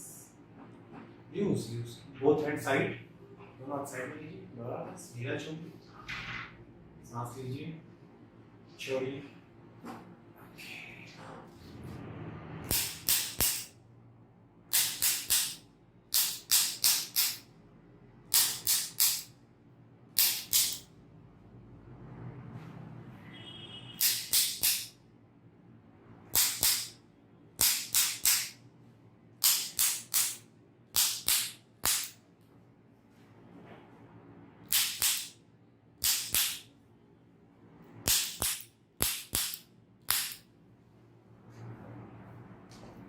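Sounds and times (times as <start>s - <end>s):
sharp hand slaps: 31.0s - 32.2s, 38.1s - 40.4s.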